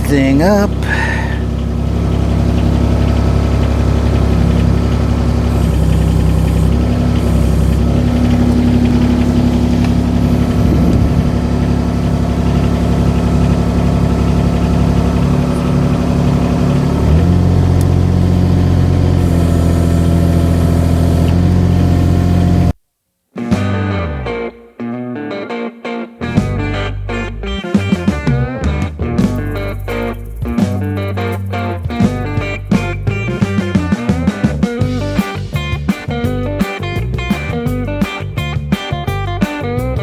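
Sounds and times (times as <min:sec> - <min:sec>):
digger engine running: 0:00.0 - 0:22.8, 0:29.2 - 0:33.6.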